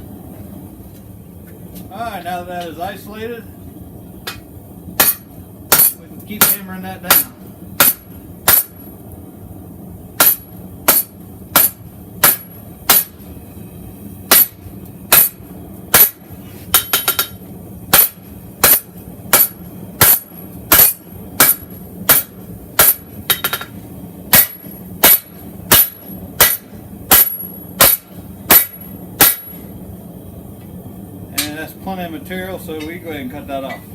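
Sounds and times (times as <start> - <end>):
steady low hum: 0.0 - 33.9
hammer striking steel on anvil: 4.2 - 8.9, 10.2 - 13.3, 14.3 - 29.7, 31.3 - 31.6.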